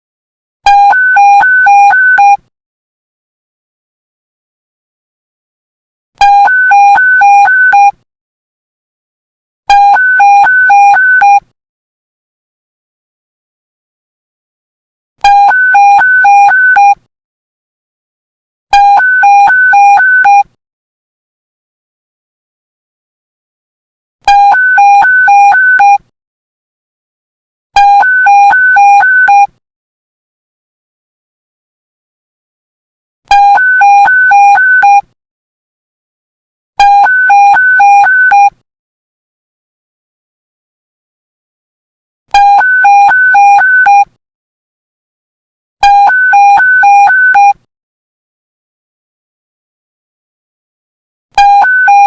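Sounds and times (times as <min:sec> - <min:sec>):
electronic two-tone alert beeps: 0:27.8 - 0:29.5, 0:33.3 - 0:35.0, 0:36.8 - 0:38.5, 0:42.4 - 0:44.1, 0:45.8 - 0:47.6, 0:51.4 - 0:52.0.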